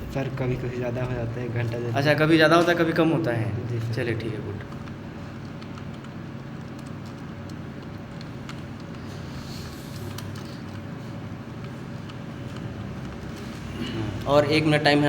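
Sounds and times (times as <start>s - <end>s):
low background hum: 0.0s - 15.0s
computer keyboard keystrokes: 4.6s - 10.9s.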